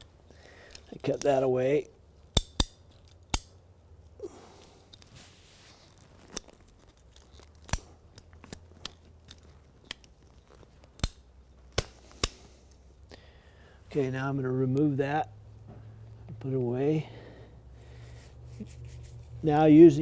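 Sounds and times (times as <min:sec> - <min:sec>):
pipe cutter clicking and snapping: 0:02.3 - 0:03.6, 0:06.4 - 0:12.8.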